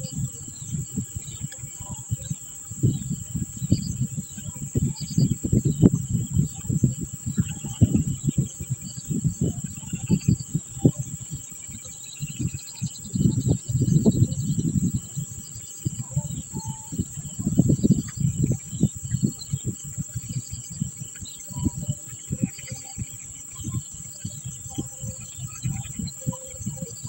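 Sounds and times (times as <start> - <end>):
faint bird chirps: 0.0 - 27.0
insects shrilling: 0.0 - 27.0.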